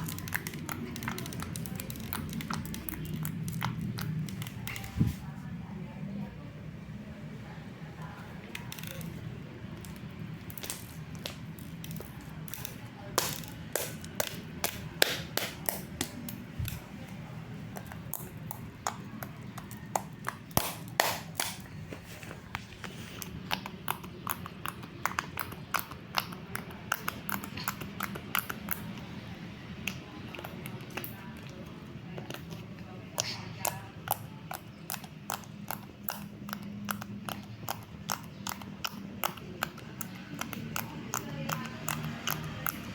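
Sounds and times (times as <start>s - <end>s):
slime squishing clicks and pops: 9.8s - 16.4s, 17.8s - 21.6s.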